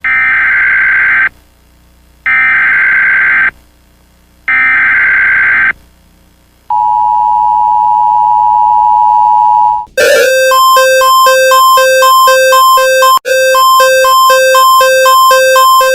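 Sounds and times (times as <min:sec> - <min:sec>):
two-tone attention signal: 0:06.8 - 0:15.9
fast repeating beeping alert tone: 0:10.0 - 0:15.9
harsh buzzing digital code bursts: 0:10.0 - 0:15.9.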